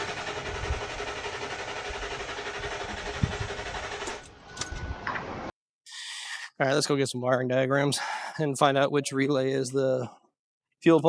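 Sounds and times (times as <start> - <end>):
engine cranking on starter: 0.0 - 4.4.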